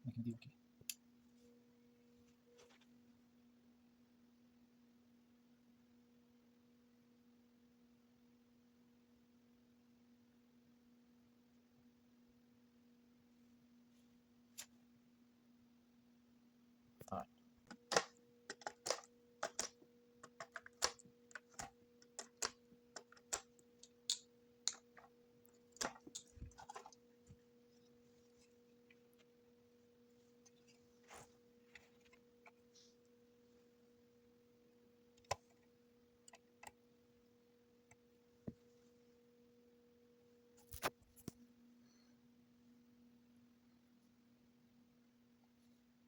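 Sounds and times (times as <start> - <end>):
faint electrical hum: 0.0 - 46.0.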